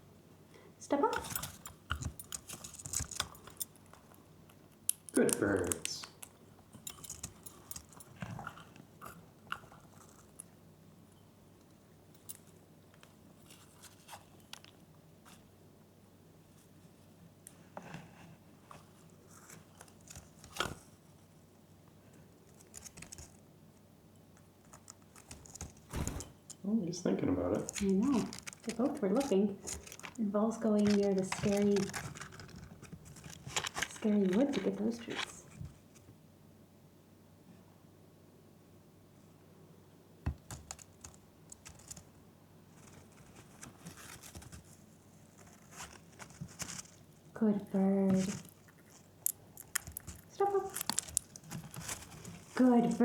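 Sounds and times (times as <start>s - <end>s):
birds scratching and rustling: 0.9s - 11.1s, 12.2s - 15.6s, 16.4s - 21.3s, 22.1s - 23.5s, 24.4s - 26.6s, 27.4s - 36.2s, 40.5s - 53.0s
parakeets crunching treats: 1.0s - 10.5s, 27.5s - 35.6s, 45.4s - 53.0s
bird claws and beaks clicking: 27.6s - 35.3s, 48.2s - 52.6s.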